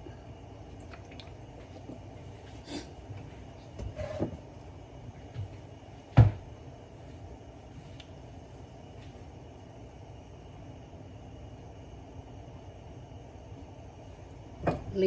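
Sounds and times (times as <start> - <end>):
kitchen objects knocking and clunking: 14.6 - 15.0.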